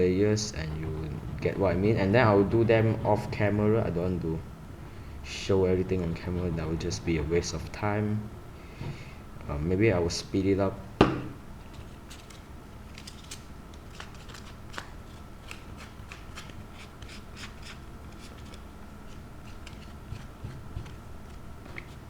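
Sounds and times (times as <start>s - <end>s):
low hum: 0.0s - 11.6s
paper crackling and tapping: 11.6s - 22.0s.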